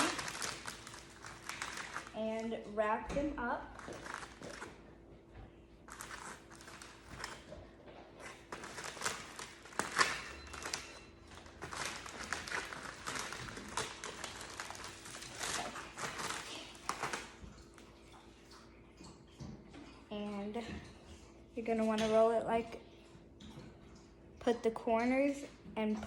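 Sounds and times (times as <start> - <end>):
soft rustling and crinkles: 0.0 - 20.0.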